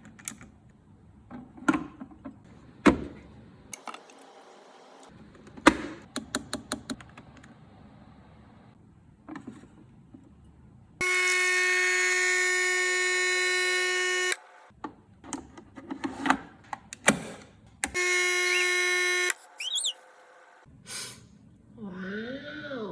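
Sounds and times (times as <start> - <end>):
coffee machine pump buzzing: 18.0 - 19.9.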